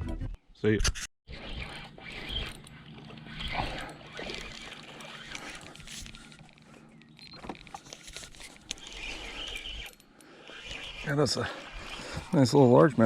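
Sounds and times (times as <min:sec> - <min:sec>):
small clicks: 0:02.2 - 0:11.1.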